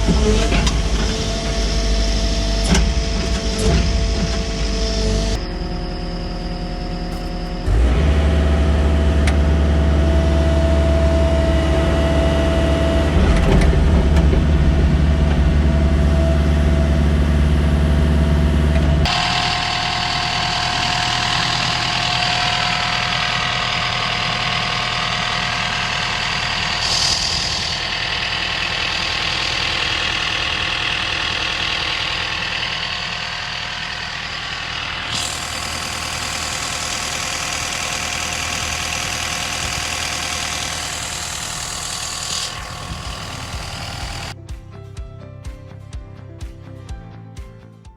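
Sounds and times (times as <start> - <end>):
diesel engine running: 0.0 - 44.4.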